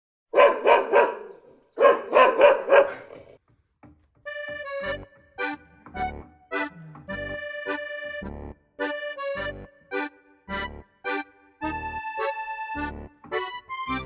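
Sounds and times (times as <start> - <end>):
dog barking: 0.4 - 3.4
accordion music: 4.3 - 14.0.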